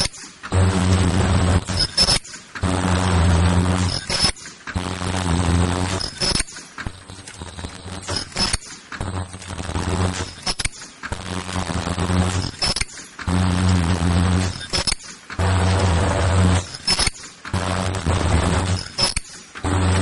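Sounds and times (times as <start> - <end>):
sharp metallic clicks: 0.0 - 0.5, 1.6 - 2.6, 3.8 - 4.8, 5.9 - 11.2, 12.3 - 13.3, 14.4 - 15.4, 16.6 - 17.6, 18.6 - 19.7
machine humming drone: 0.0 - 20.0.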